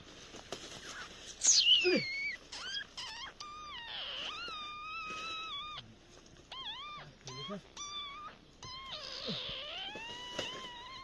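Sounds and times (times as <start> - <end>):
sharp falling animal cry: 0.8 - 5.8, 6.5 - 11.0
high-pitched animal calls: 0.8 - 5.9, 6.5 - 11.0.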